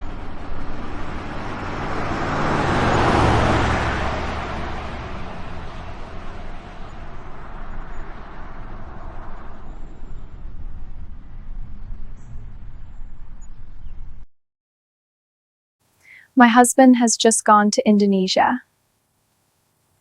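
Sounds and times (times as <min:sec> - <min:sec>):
vehicle driving past: 0:00.0 - 0:14.2.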